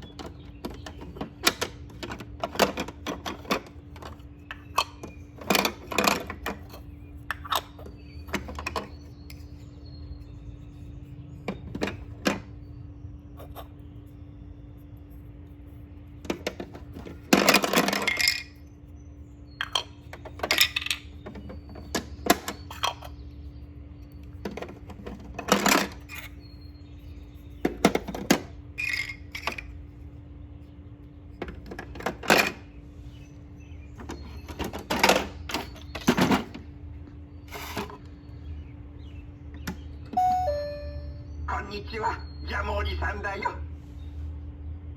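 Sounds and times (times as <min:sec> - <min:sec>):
plastic shape pieces clattering: 0:17.1 - 0:18.6.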